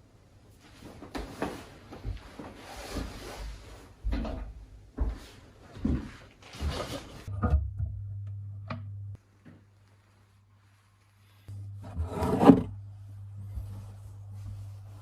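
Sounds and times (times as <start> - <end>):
low steady hum: 7.3 - 15.0.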